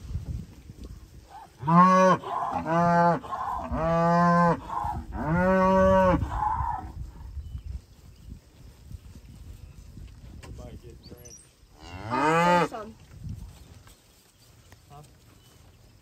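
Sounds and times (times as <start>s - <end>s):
cattle mooing: 1.6s - 6.8s.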